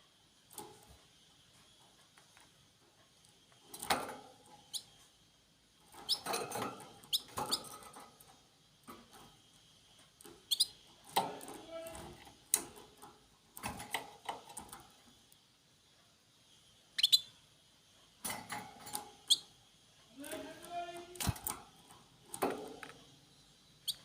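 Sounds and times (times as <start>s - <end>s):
small birds chirping: 0.2s - 24.0s.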